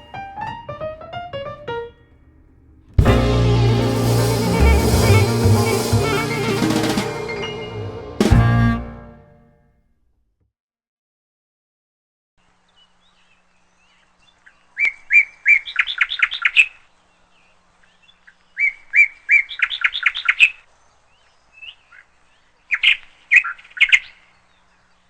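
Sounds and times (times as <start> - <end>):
songbird chirping: 12.6 - 25.0.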